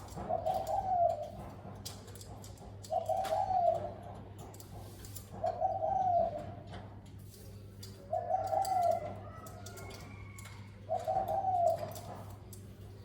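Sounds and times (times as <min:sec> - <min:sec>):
dove cooing: 0:00.0 - 0:01.5, 0:02.8 - 0:04.1, 0:05.4 - 0:06.8, 0:08.0 - 0:12.5.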